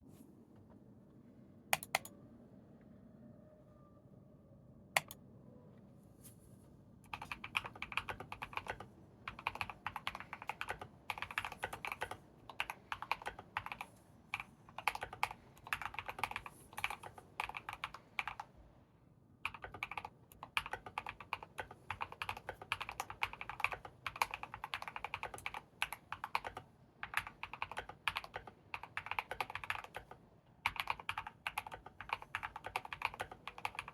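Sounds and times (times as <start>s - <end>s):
mechanical keyboard typing: 1.8s - 2.1s, 7.1s - 18.5s, 19.4s - 33.9s.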